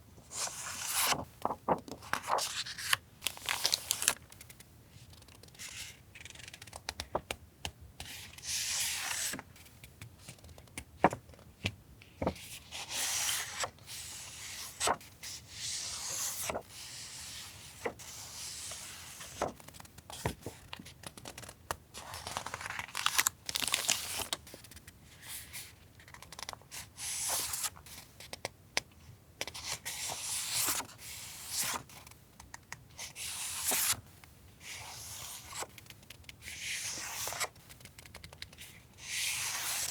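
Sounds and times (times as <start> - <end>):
paper rustling and sliding: 0.3 - 4.2, 14.4 - 20.4.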